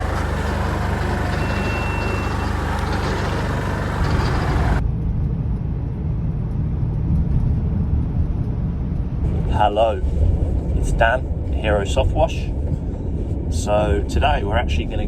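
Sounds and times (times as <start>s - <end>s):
motor running: 0.0s - 4.8s.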